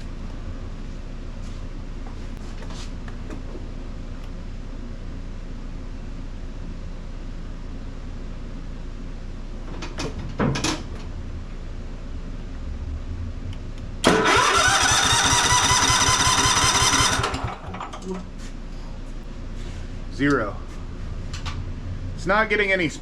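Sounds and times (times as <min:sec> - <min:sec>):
electric starter cranking engine: 0:14.0 - 0:18.1.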